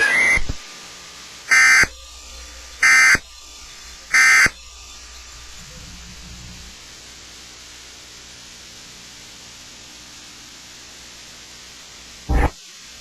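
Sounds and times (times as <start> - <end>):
steady low hiss: 0.6 - 13.0
shrill digital squawks: 1.5 - 1.9, 2.8 - 3.2, 4.1 - 4.5.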